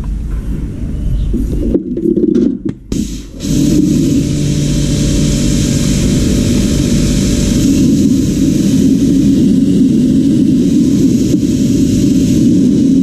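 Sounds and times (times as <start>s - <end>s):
motor running with hum and hiss: 2.9s - 13.0s.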